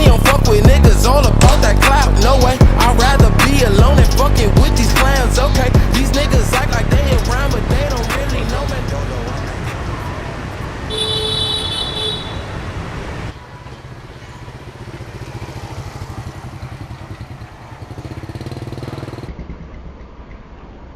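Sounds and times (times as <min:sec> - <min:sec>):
motorbike street traffic: 0:00.0 - 0:20.9
vehicle horn beeping: 0:10.8 - 0:12.6
motorbike engine pulsing: 0:13.9 - 0:20.9.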